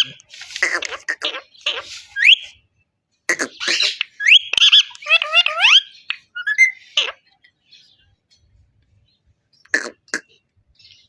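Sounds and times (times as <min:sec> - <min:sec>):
parakeet harsh screechy calls: 0:00.0 - 0:02.6, 0:03.3 - 0:07.3.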